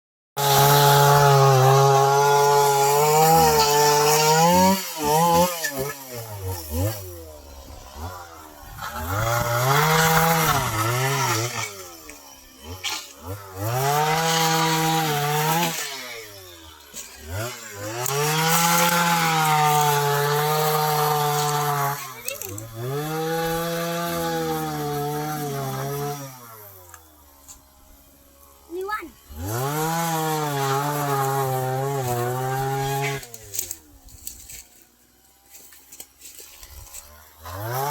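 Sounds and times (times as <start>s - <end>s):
small engine running: 0.4s - 37.9s.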